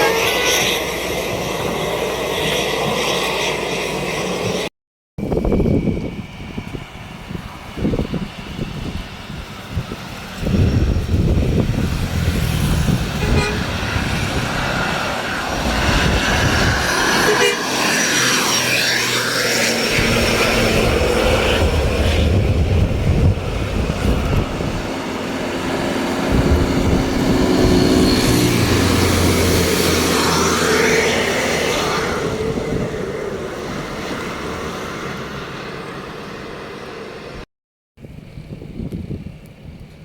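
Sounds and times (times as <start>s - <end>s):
horn tooting: 0.0s - 0.8s, 13.1s - 14.0s, 17.1s - 17.9s
bus engines rumbling past: 7.1s - 37.4s.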